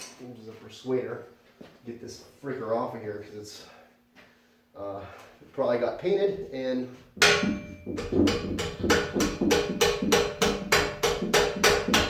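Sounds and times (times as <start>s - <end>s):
hammer blows on metal: 7.2s - 12.0s.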